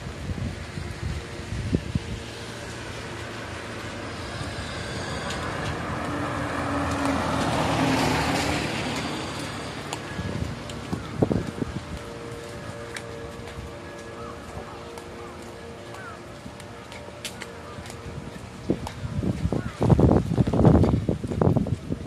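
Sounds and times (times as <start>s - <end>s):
car passing by: 0.0s - 16.2s.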